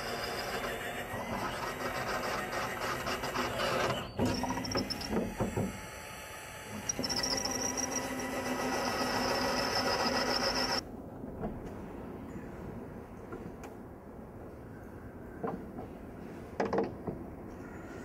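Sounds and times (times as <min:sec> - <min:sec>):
small machine running: 0:00.0 - 0:10.8.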